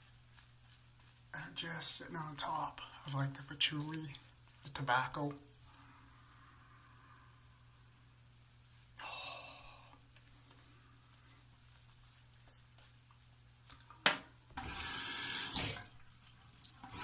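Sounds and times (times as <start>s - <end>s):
sink tap running: 14.6s - 15.9s.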